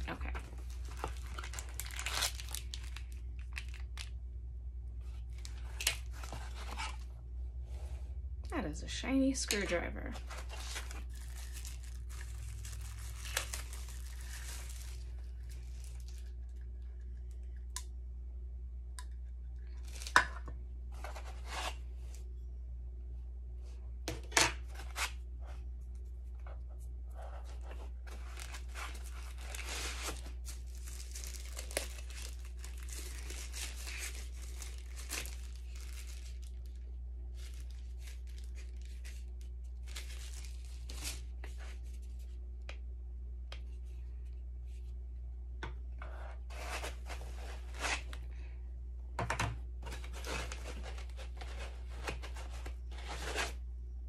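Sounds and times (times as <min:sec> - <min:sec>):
plastic packaging crinkling and tearing: 0:00.0 - 0:04.2, 0:10.2 - 0:16.8, 0:19.8 - 0:20.2, 0:27.6 - 0:42.0, 0:49.8 - 0:53.6
steady low hum: 0:00.0 - 0:54.0.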